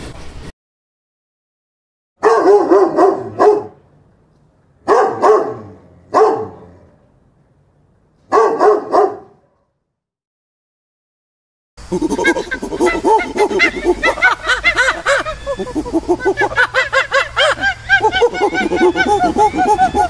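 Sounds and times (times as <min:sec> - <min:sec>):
dog barking: 0:02.2 - 0:03.8, 0:04.8 - 0:06.8, 0:08.3 - 0:09.8.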